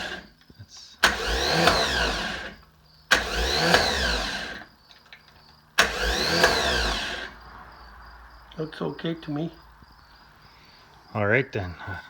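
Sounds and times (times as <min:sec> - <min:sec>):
starter motor cranking engine: 0:00.0 - 0:07.4.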